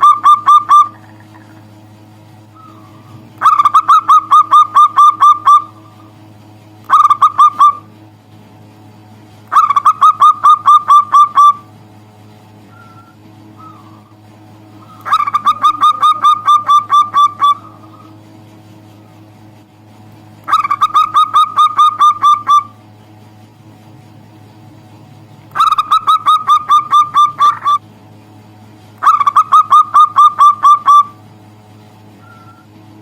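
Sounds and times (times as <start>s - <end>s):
dove cooing: 0.0s - 1.8s, 2.5s - 6.1s, 6.9s - 7.9s, 9.5s - 11.7s, 12.7s - 18.2s, 20.5s - 22.8s, 25.5s - 27.8s, 29.0s - 31.2s
faint steady hum: 0.0s - 33.0s.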